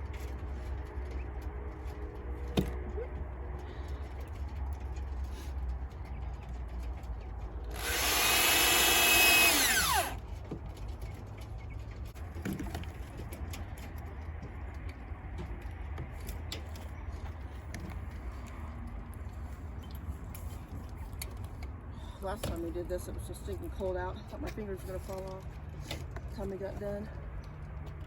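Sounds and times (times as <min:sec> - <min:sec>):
power drill drilling into wood: 0:07.7 - 0:10.2.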